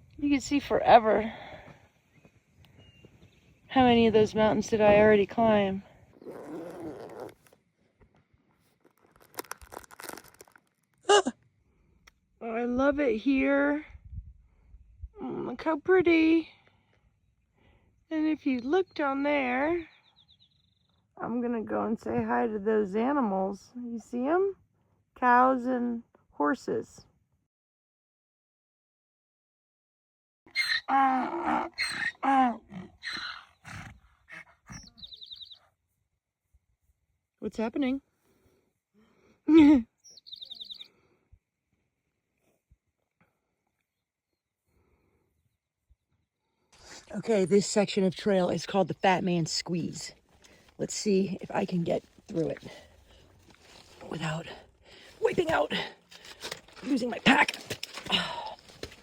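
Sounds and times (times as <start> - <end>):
rustling and crinkling handling: 8.5 - 11.0, 51.6 - 59.0.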